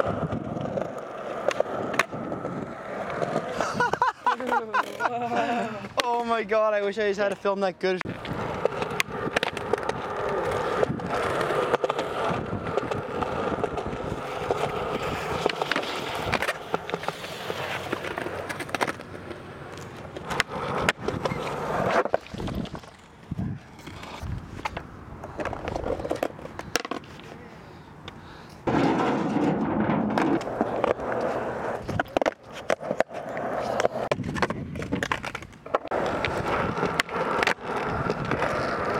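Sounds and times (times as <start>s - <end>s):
skateboard clacks: 0.0s - 5.2s, 8.0s - 23.1s, 28.0s - 38.9s
skateboard wheels rolling on pavement: 0.0s - 38.9s.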